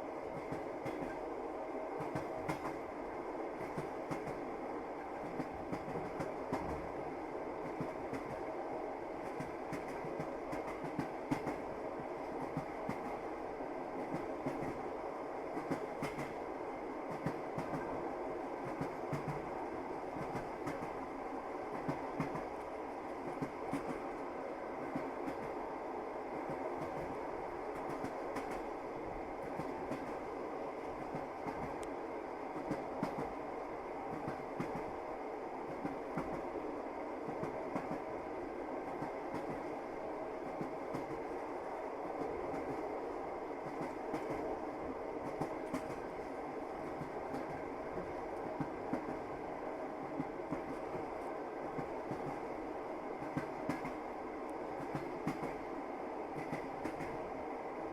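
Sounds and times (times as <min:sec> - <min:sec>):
train wheels clattering on rails: 0:00.0 - 0:01.2, 0:02.0 - 0:02.9, 0:03.6 - 0:07.0, 0:07.6 - 0:08.5, 0:09.2 - 0:13.2, 0:14.0 - 0:14.8, 0:15.6 - 0:16.4, 0:17.1 - 0:18.0, 0:18.6 - 0:21.0, 0:21.7 - 0:24.2, 0:26.4 - 0:28.8, 0:29.4 - 0:31.9, 0:32.5 - 0:33.4, 0:34.1 - 0:35.0, 0:35.7 - 0:36.5, 0:37.3 - 0:38.1, 0:38.8 - 0:39.7, 0:40.4 - 0:41.4, 0:43.6 - 0:44.5, 0:45.2 - 0:49.3, 0:50.2 - 0:52.5, 0:53.2 - 0:54.0, 0:54.8 - 0:55.7, 0:56.4 - 0:57.2.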